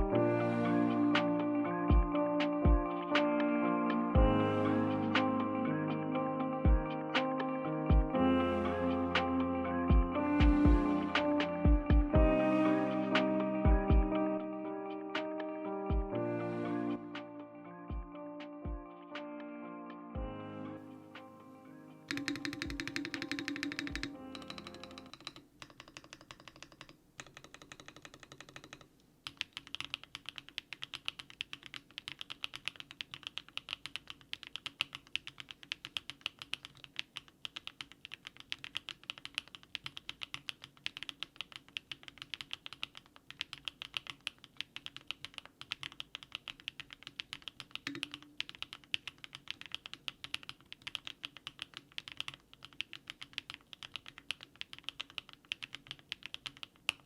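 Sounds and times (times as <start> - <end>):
background music: 0.0 - 25.5
rapid mechanical keyboard typing: 22.1 - 57.0.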